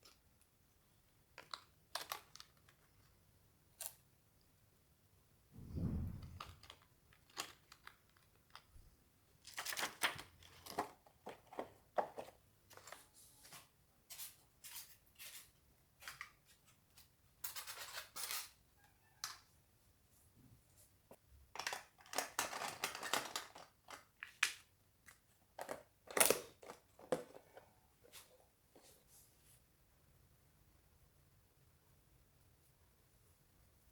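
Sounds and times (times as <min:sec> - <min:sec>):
objects handled with clicks and scrapes: 0:09.6 - 0:18.6, 0:25.0 - 0:29.2.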